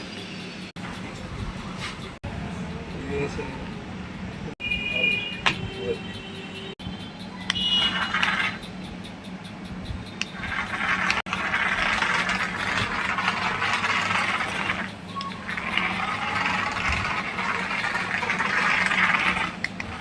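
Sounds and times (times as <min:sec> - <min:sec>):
toy train whirring hiss: 0:07.8 - 0:20.0.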